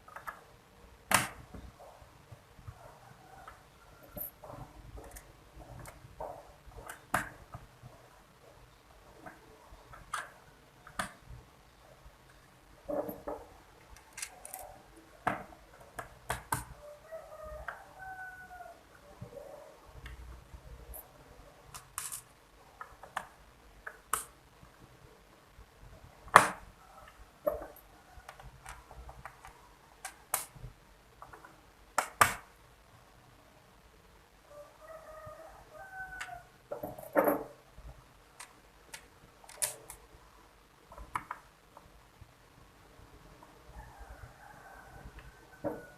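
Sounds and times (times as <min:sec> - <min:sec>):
small parts clicking and tapping: 0:03.4 - 0:07.7, 0:13.0 - 0:16.8, 0:21.7 - 0:24.4, 0:26.3 - 0:32.5, 0:38.2 - 0:40.1.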